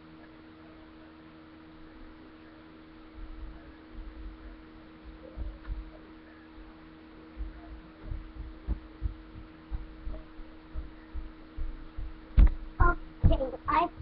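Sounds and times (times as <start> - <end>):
steady hum: 0.0 - 14.0
dull low thumps: 3.1 - 14.0
sharp knock: 12.4 - 12.6.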